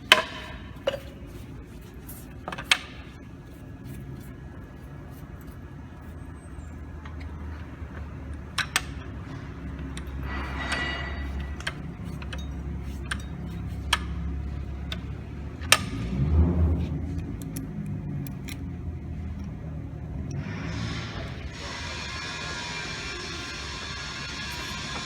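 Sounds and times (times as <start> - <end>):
drill press motor hum: 20.3 - 25.0
high grinding noise: 20.4 - 25.0.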